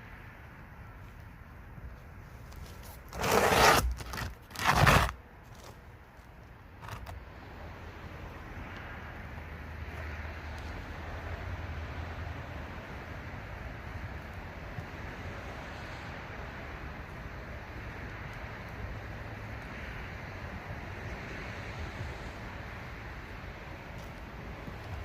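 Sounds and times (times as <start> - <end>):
loud scrapes: 2.8 - 5.7.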